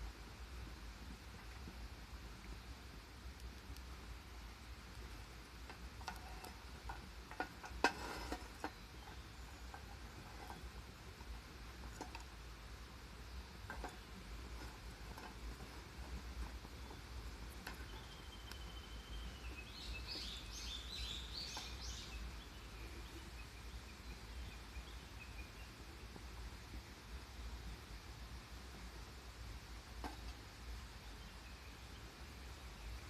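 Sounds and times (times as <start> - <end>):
outdoor background noise: 0.0 - 33.0
bird chirping: 8.3 - 10.6, 13.2 - 26.2, 30.1 - 33.0.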